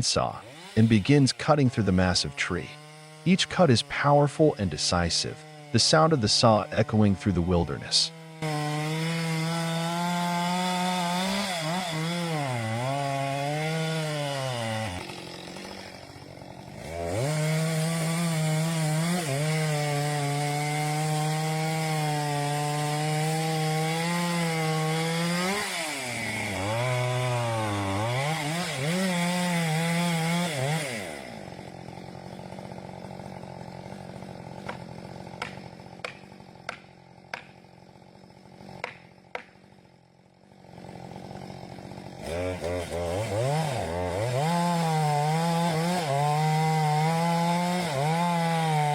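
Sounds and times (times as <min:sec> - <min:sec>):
chainsaw cutting through tree trunk: 0:00.0 - 0:48.9.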